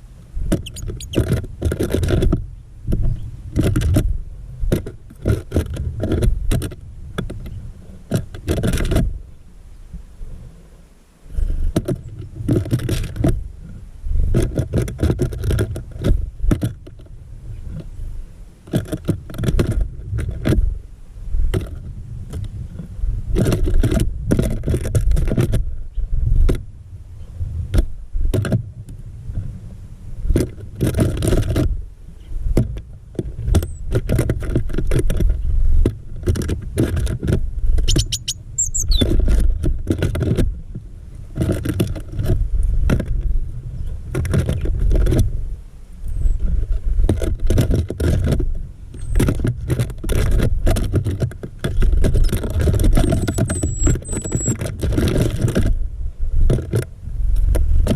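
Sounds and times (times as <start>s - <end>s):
bird feet and beaks knocking: 0.5s - 4.1s, 4.7s - 9.1s, 11.8s - 13.4s, 14.3s - 17.1s, 18.7s - 20.7s, 21.5s - 22.5s, 30.3s - 31.7s, 32.5s - 40.6s, 47.1s - 55.8s, 56.5s - 57.9s
bird chirp: 0.6s - 1.2s, 37.8s - 39.1s, 53.0s - 54.6s.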